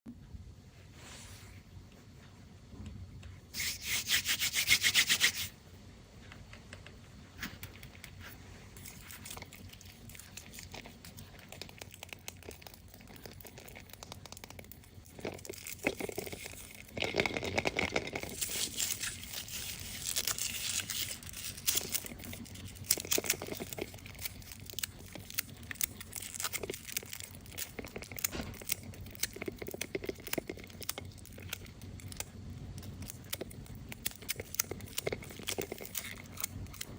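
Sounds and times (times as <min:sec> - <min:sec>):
foil wrapper crinkling and tearing: 0:08.8 - 0:36.9.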